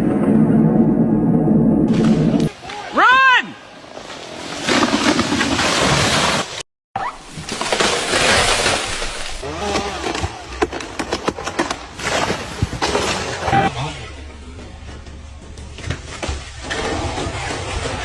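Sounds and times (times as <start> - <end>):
branches rustling: 3.8 - 13.7
tree crashing down: 3.9 - 6.6, 7.2 - 13.7
wood cracking and snapping: 7.3 - 13.7.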